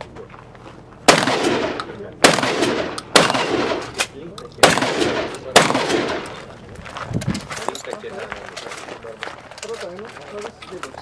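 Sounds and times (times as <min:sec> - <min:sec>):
shotgun shots: 0:01.1 - 0:06.4.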